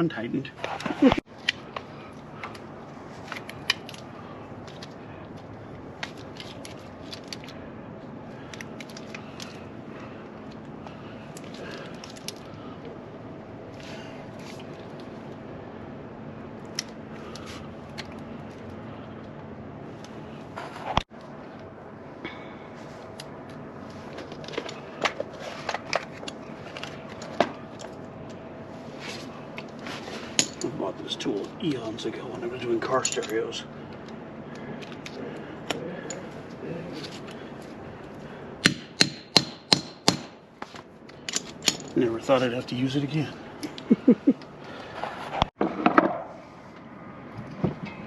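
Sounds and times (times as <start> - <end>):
faint steady hum: 0.0 - 45.6
hand tools clicking and tapping: 38.6 - 42.0.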